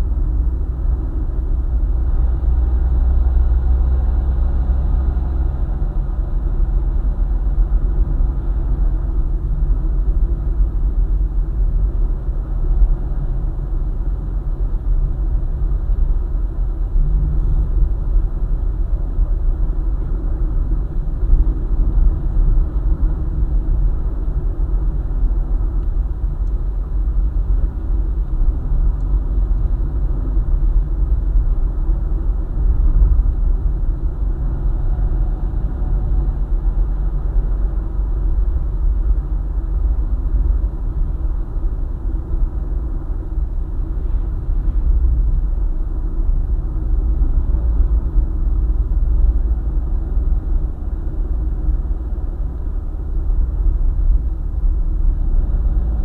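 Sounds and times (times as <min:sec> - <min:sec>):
car engine and tyre rumble: 0:00.0 - 0:56.0.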